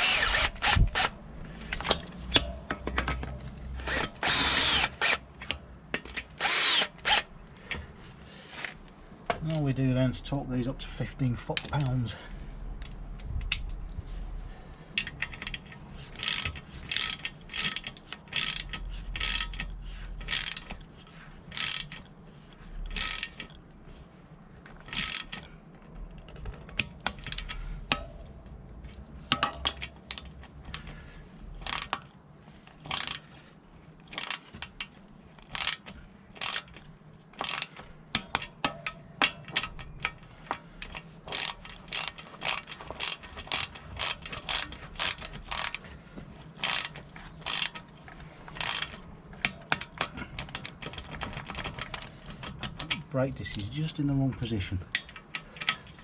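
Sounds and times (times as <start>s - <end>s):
torque wrench ratchet clicks: 0.0s - 1.1s, 3.8s - 5.2s, 6.4s - 7.3s, 15.0s - 20.8s, 21.5s - 22.1s, 22.9s - 23.6s, 24.9s - 25.5s, 31.6s - 32.0s, 32.8s - 33.2s, 34.1s - 38.5s, 40.8s - 45.8s, 46.6s - 47.8s, 48.5s - 52.9s.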